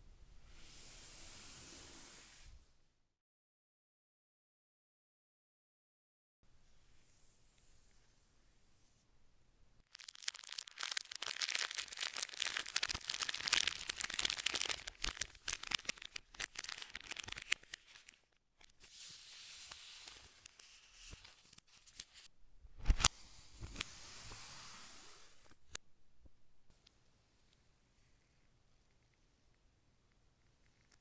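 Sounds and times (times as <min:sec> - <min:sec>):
plastic packaging tearing and crinkling: 0:09.9 - 0:18.2.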